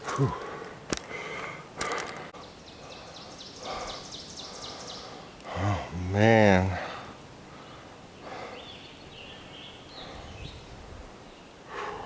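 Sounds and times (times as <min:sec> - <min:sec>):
person breathing heavily: 0:00.0 - 0:06.0, 0:06.7 - 0:08.8, 0:09.9 - 0:10.6, 0:11.7 - 0:12.0.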